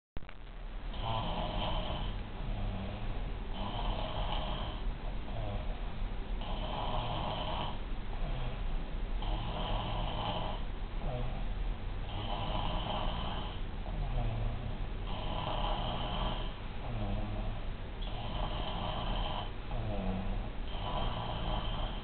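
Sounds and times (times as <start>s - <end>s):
person snoring loudly: 0.9s - 5.8s, 6.4s - 8.6s, 9.2s - 11.4s, 12.1s - 22.0s
low breathing: 1.0s - 22.0s.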